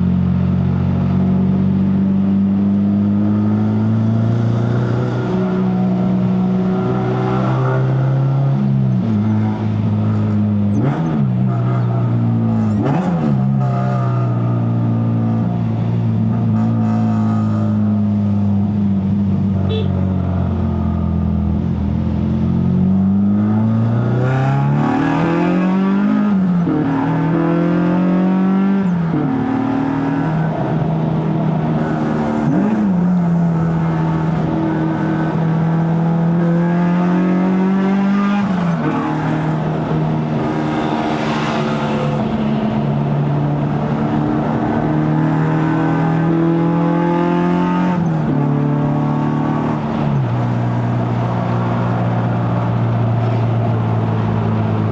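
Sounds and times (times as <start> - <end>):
car engine accelerating through gears: 0.2 - 18.5, 20.4 - 54.9.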